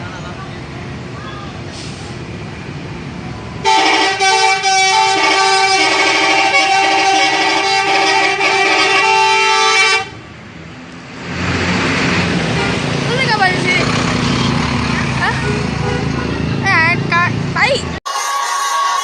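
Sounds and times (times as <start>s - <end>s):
engine and road noise: 0.0s - 19.0s
bus horn playing melody: 3.6s - 10.2s, 15.3s - 16.5s, 18.1s - 19.0s.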